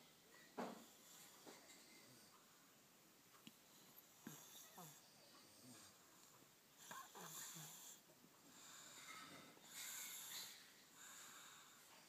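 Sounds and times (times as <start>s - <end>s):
baby snoring: 6.9s - 8.0s.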